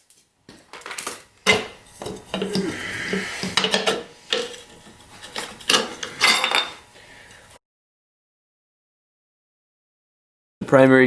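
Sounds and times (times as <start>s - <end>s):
metal tools clinking: 0.8s - 6.9s.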